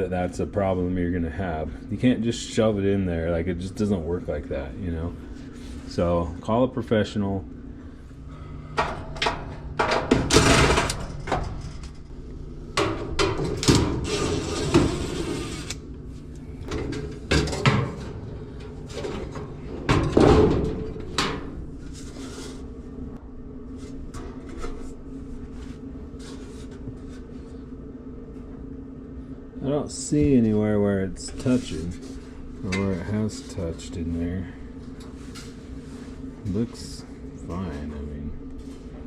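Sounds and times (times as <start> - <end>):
steady low hum: 0.0 - 39.0
tools and metal parts clattering: 8.8 - 12.0.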